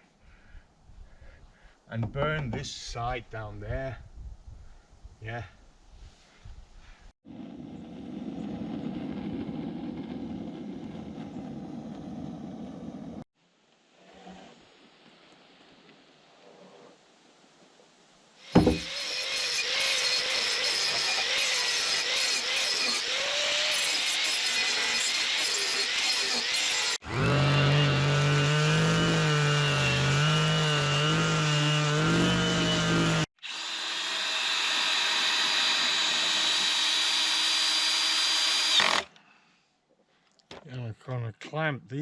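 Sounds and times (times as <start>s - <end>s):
power tool running on wood: 18.6s - 39.1s.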